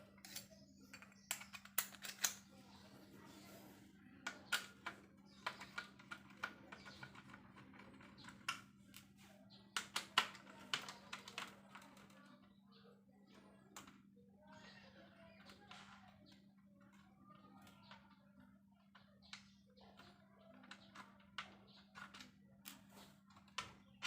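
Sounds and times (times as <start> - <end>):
sharp clicks and taps: 0.2 - 2.5, 4.3 - 9.1, 9.8 - 12.1.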